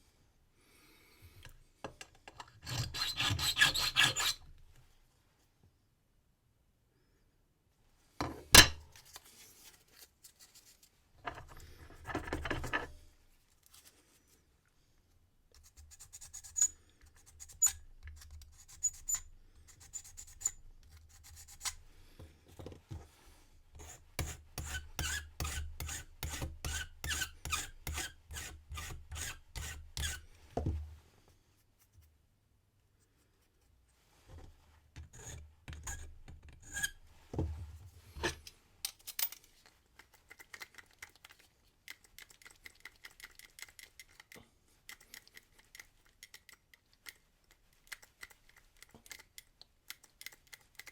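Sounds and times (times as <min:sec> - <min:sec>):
file rasping on brass: 0:02.6 - 0:04.5, 0:23.8 - 0:30.2, 0:35.1 - 0:37.0.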